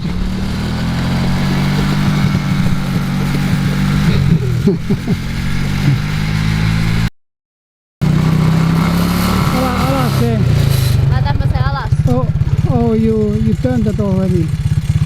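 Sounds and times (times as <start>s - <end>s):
atv engine running: 0.0s - 7.1s, 8.0s - 15.0s.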